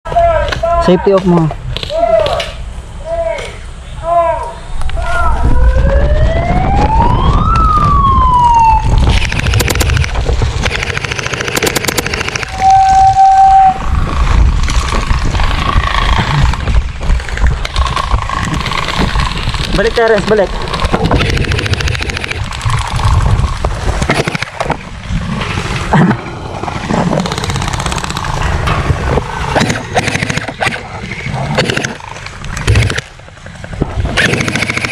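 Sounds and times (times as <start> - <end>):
rising and falling siren: 4.8 - 9.1, 12.4 - 13.8
rapid clicking: 9.0 - 12.6, 14.1 - 24.8, 27.1 - 30.8, 31.5 - 33.2, 34.1 - 34.9
toy blaster firing full auto: 9.0 - 12.6, 21.1 - 22.5, 29.6 - 30.8, 34.2 - 34.9.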